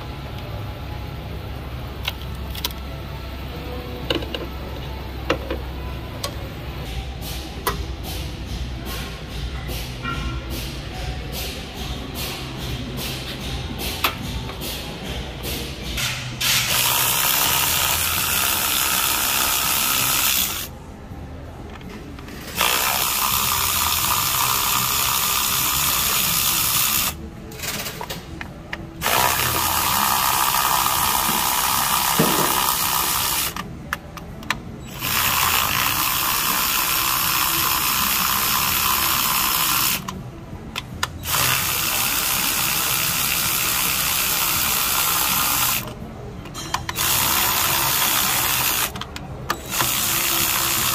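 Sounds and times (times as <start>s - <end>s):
power tool running: 16.5s - 20.7s, 22.5s - 27.2s, 29.0s - 33.6s, 34.9s - 40.1s, 41.1s - 45.9s, 46.9s - 50.9s.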